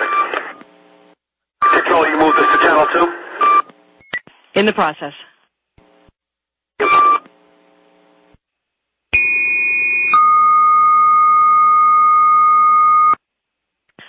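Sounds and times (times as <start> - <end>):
radio chirp: 0.0 - 0.6, 1.6 - 3.7.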